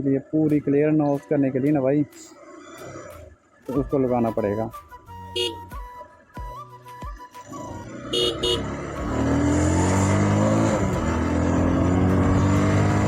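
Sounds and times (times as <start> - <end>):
short horn toots: 5.4 - 5.6, 8.1 - 8.7
motorcycle engine accelerating: 7.5 - 13.0.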